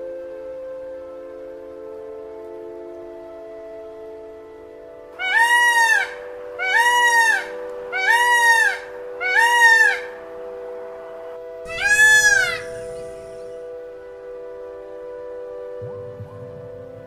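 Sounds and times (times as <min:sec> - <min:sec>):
background music tones: 0:00.0 - 0:17.0
peacock calling: 0:05.2 - 0:10.3, 0:11.7 - 0:13.8.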